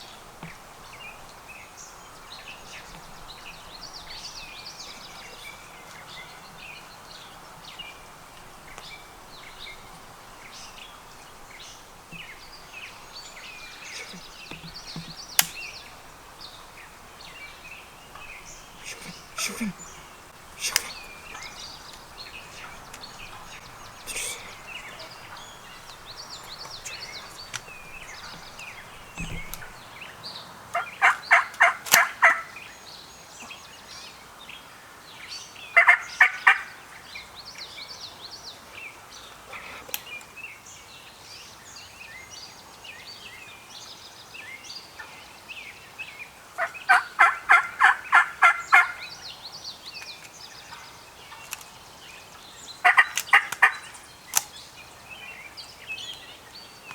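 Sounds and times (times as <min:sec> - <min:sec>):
songbirds chirping: 0:00.0 - 0:56.9
turkeys gobbling: 0:07.3 - 0:29.9, 0:30.8 - 0:32.5, 0:35.8 - 0:36.8, 0:46.6 - 0:49.1, 0:52.8 - 0:54.0.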